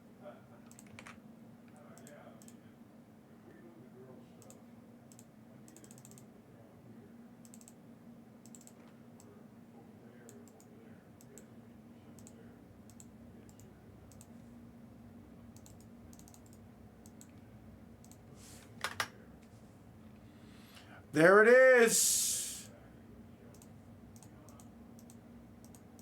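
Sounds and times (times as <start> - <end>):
faint scattered clicks: 0.6 - 2.6, 4.4 - 6.3, 7.4 - 7.8, 8.4 - 9.3, 10.3 - 11.5, 12.2 - 14.3, 15.6 - 18.2, 23.5 - 26.0.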